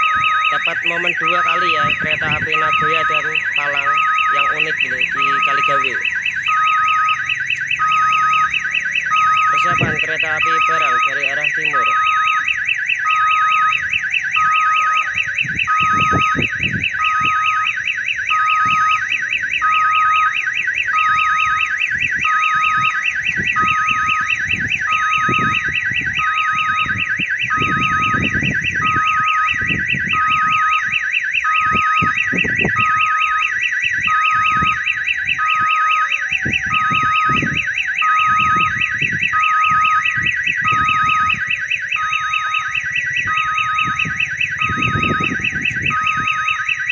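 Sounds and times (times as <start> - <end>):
high beep: 0.0 - 13.8, 42.0 - 46.6
low rumbles: 0.0 - 46.7
level crossing warning siren: 0.0 - 46.9.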